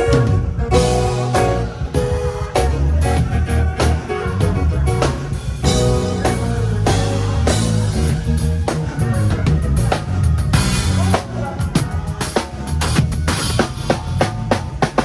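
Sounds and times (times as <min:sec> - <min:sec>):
guitar: 0:00.0 - 0:15.0
heavy bass line: 0:00.0 - 0:15.0
rock band music: 0:00.0 - 0:15.0
steady drum beat: 0:00.0 - 0:15.0.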